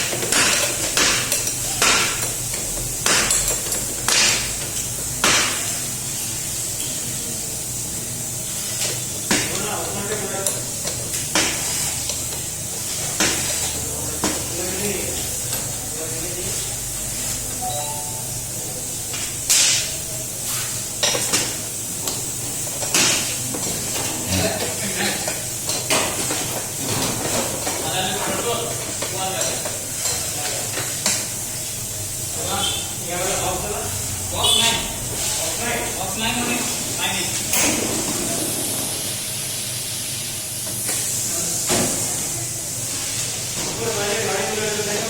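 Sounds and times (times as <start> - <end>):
hissing and clattering bursts: 37.5 - 43.8.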